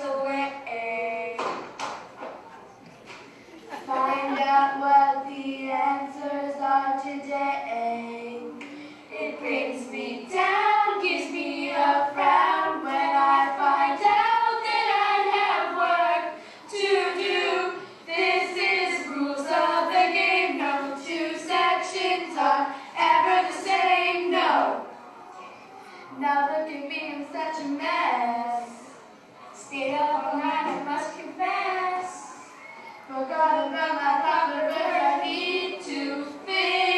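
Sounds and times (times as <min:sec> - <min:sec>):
children singing together: 0:03.7 - 0:24.9, 0:29.6 - 0:36.9.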